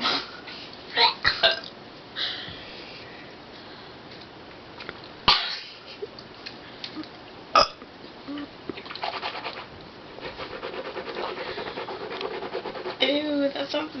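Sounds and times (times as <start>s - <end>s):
person burping: 7.6s - 7.8s.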